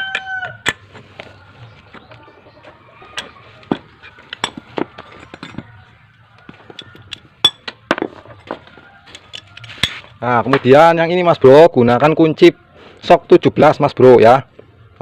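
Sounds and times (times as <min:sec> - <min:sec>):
metal hand tools clinking: 0:04.0 - 0:06.0, 0:06.7 - 0:07.8, 0:09.1 - 0:10.0.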